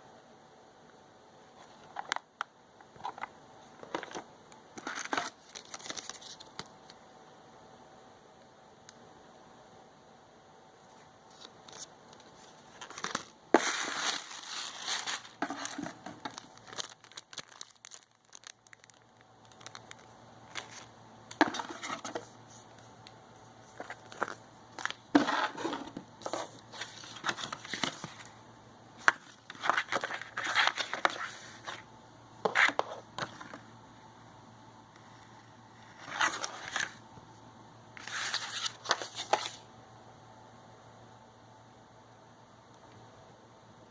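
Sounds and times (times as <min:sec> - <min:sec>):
packaging crinkling and rustling: 0:03.0 - 0:06.7, 0:11.3 - 0:22.3, 0:23.7 - 0:28.3, 0:29.0 - 0:31.9, 0:35.9 - 0:37.0, 0:38.0 - 0:39.6.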